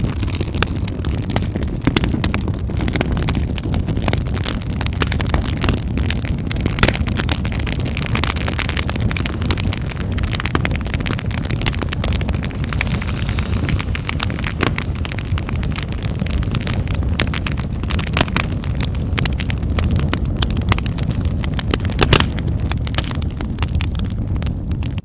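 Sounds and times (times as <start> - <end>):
low rumble of flames: 0.0 - 25.0
wood fire crackling and popping: 0.0 - 25.0.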